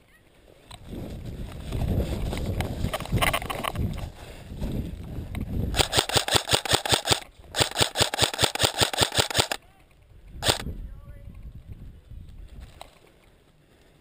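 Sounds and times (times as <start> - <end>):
airsoft rifle full-auto bursts: 5.7 - 9.6, 10.4 - 10.6.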